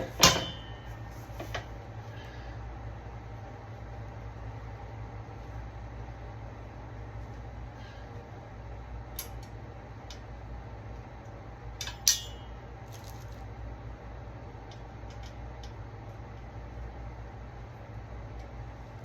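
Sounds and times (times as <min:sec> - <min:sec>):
metal hardware clinking: 0:00.0 - 0:00.9, 0:11.8 - 0:13.1
steady low hum: 0:00.0 - 0:19.0
sharp ringing clack: 0:00.2 - 0:00.9, 0:11.8 - 0:12.6.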